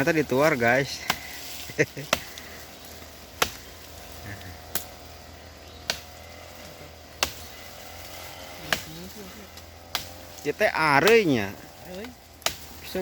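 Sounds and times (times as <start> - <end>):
machete chopping wood: 1.0 - 2.4, 3.3 - 3.8, 4.6 - 5.0, 5.8 - 6.5, 7.1 - 10.4, 12.0 - 12.9.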